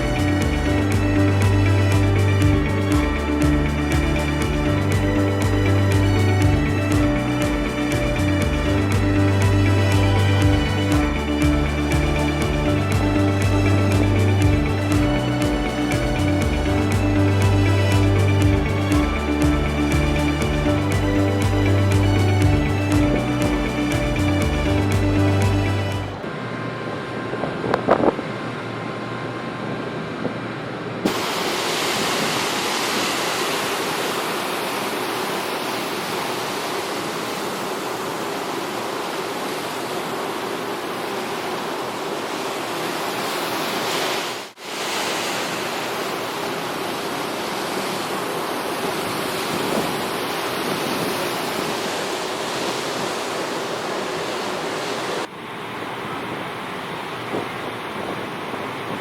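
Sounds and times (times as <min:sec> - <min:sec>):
water rushing along hull: 0:00.0 - 0:59.0
wind buffeting microphone: 0:48.8 - 0:53.2, 0:55.8 - 0:59.0.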